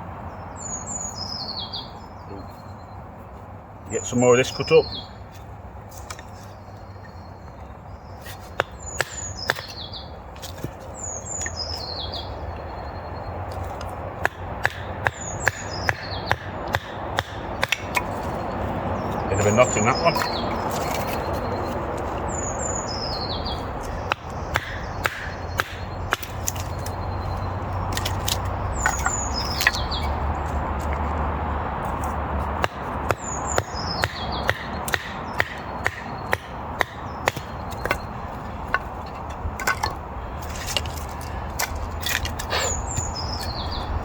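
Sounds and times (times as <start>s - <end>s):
songbird singing: 0.0s - 44.0s
knife batoning through wood: 39.5s - 43.9s.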